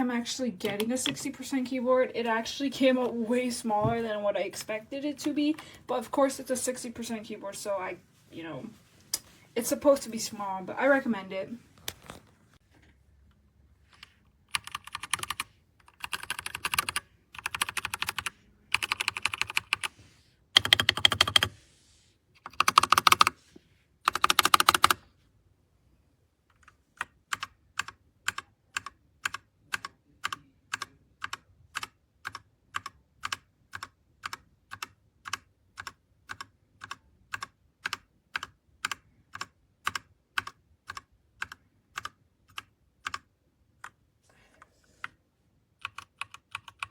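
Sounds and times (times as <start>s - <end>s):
mechanical keyboard typing: 14.0s - 19.9s, 20.6s - 21.6s, 22.4s - 23.4s, 24.1s - 25.0s, 26.5s - 44.0s, 45.8s - 46.9s.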